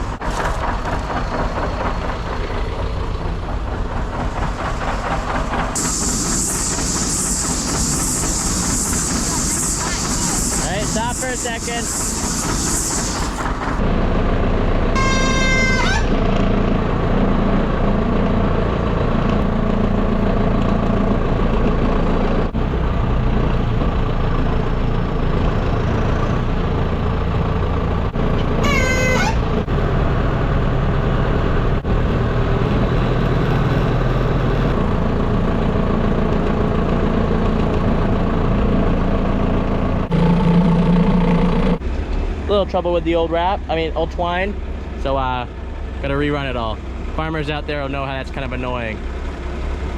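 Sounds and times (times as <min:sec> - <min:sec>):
tractor engine running: 0:00.0 - 0:49.9
short rising squeals: 0:04.8 - 0:13.8, 0:15.0 - 0:16.2, 0:28.1 - 0:29.9.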